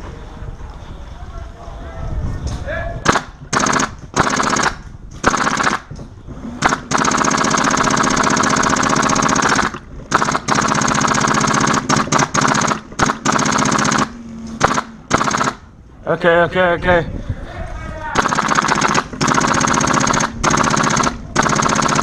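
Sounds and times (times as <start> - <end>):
airsoft machine gun bursts: 3.0 - 5.9, 6.6 - 15.6, 18.2 - 22.0.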